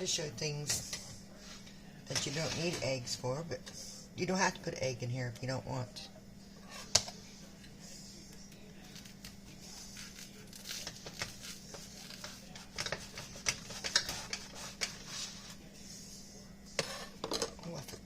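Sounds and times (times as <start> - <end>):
utensil scraping and tapping bowl: 10.8 - 15.6, 16.7 - 17.9.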